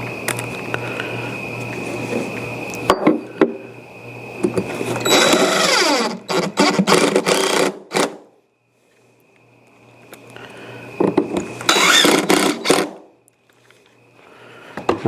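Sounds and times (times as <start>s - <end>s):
power drill driving screws: 5.0s - 8.2s, 11.7s - 13.0s.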